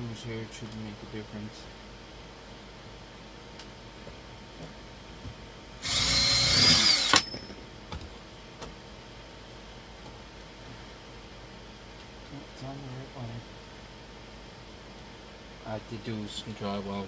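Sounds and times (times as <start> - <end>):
cordless drill driving a screw: 5.8 - 7.3.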